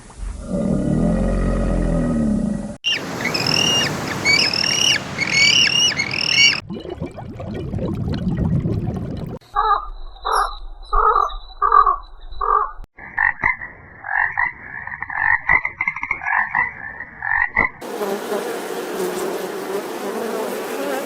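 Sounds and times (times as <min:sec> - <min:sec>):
low roar-like animal call: 0:00.2 - 0:02.8
short high rising-falling calls: 0:02.8 - 0:06.6.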